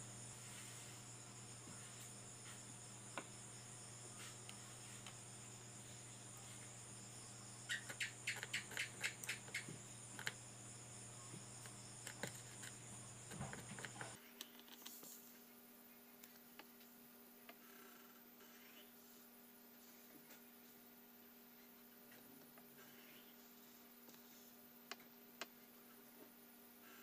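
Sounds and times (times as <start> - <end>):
crickets chirping: 0.0 - 14.2
faint low electrical hum: 0.0 - 27.0.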